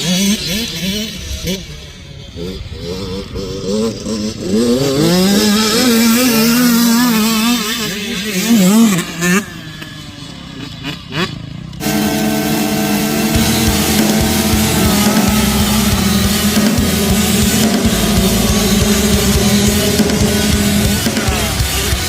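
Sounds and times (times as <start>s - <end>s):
dirt bike engine revving: 0.0s - 22.0s
music: 13.3s - 22.0s.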